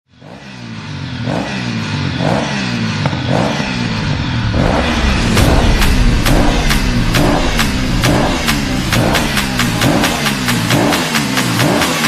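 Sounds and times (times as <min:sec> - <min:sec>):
low synth bass: 0:03.3 - 0:11.3
sharp beats: 0:03.3 - 0:12.0.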